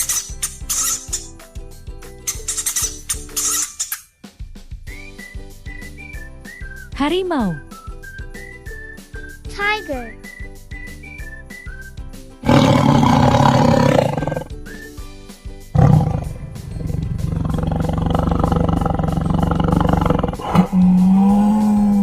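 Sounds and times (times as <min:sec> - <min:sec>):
light background music: 0:00.0 - 0:22.0
tiger roaring: 0:12.4 - 0:14.5, 0:15.8 - 0:22.0.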